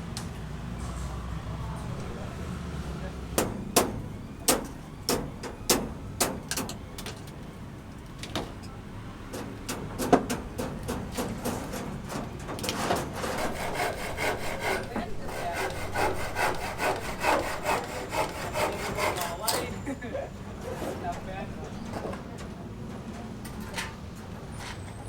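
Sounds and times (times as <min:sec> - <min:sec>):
hand saw cutting timber: 0:12.6 - 0:19.8.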